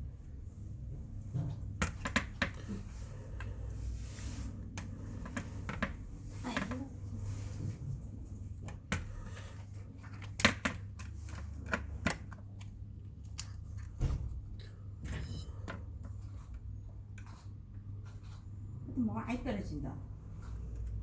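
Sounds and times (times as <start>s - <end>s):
steady low hum: 10.9s - 21.0s.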